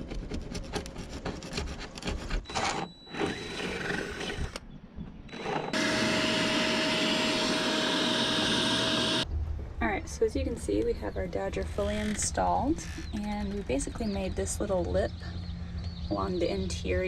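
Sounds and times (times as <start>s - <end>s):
steady loud whirring: 5.3s - 9.3s.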